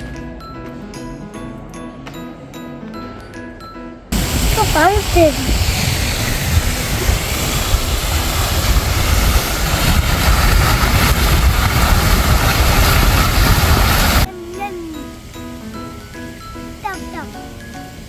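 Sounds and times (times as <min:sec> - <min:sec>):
low rumble: 0:04.2 - 0:14.3
fountain water splashing: 0:04.2 - 0:15.2.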